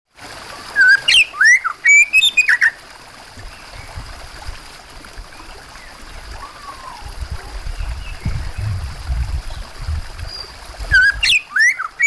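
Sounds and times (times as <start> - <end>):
trickle of running water: 0.1 - 12.0
bird singing whistled notes: 0.8 - 2.8, 10.3 - 12.0.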